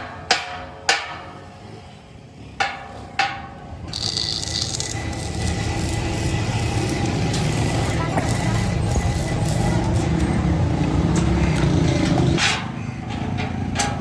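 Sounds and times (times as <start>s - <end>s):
rumbling machine noise: 3.9s - 12.5s.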